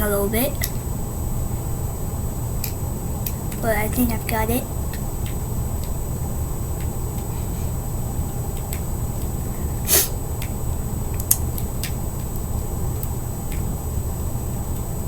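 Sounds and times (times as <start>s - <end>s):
low hum: 0.0s - 15.0s
person sniffing: 9.8s - 10.2s.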